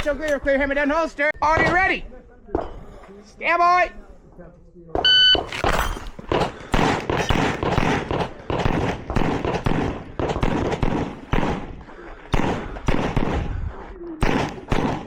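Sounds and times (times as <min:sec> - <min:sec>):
pistol shots: 0:05.4 - 0:13.6, 0:14.2 - 0:15.0.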